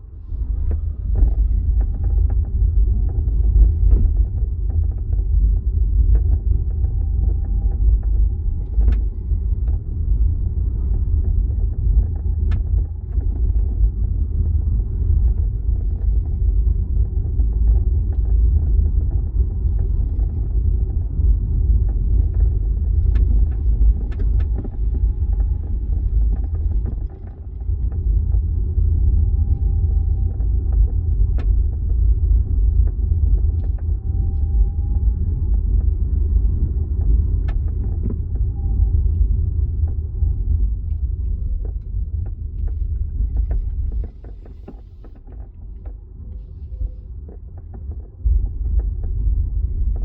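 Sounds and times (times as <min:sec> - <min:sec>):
car road rumble: 0:00.0 - 0:50.0
rattling and creaking: 0:21.7 - 0:32.0.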